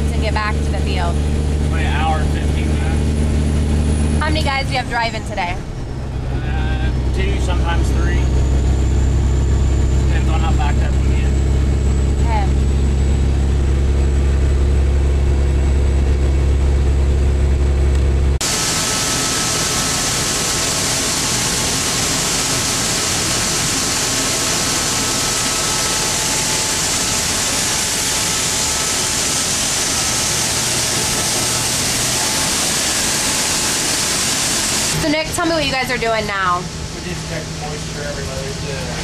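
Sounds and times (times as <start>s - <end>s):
truck engine droning: 0.0s - 39.0s
grain equipment rushing noise: 18.4s - 35.0s.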